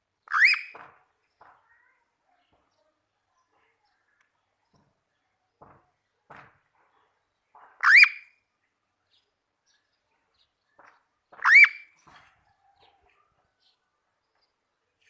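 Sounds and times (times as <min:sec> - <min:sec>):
parakeet calls: 0:00.3 - 0:00.8, 0:07.8 - 0:08.3, 0:11.4 - 0:12.0.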